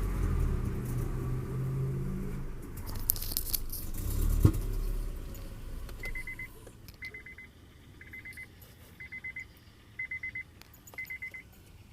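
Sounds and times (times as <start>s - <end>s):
engine rumble: 0.0s - 11.9s
car warning chime beeping: 6.0s - 11.6s.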